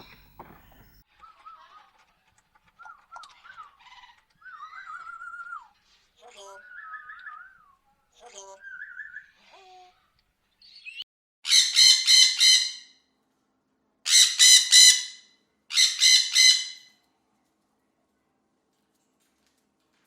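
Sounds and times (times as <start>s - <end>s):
pet bird squawking: 14.1s - 16.9s.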